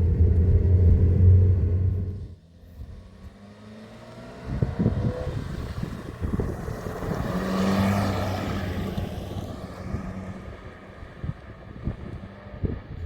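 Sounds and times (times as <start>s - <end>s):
short low thumps: 0.0s - 2.4s
vehicle engine passing by: 0.0s - 2.4s, 3.4s - 10.8s.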